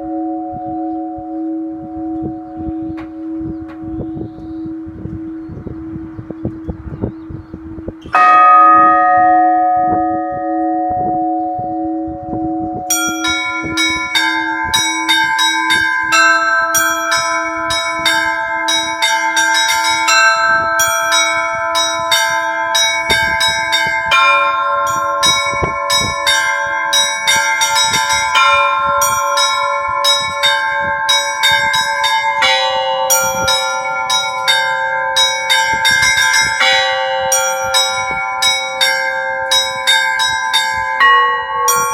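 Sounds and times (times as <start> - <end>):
middle bells ringing: 0.0 - 5.5, 8.0 - 41.9
large bell ringing: 0.0 - 41.9
small bells chiming rapidly: 12.8 - 41.9.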